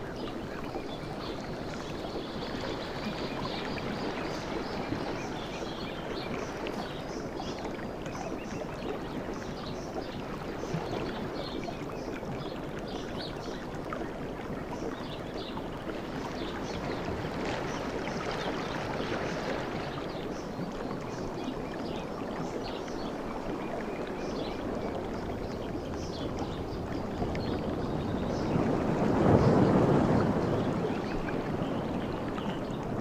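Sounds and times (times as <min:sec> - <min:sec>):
surf rushing onto beach: 0:28.2 - 0:31.6.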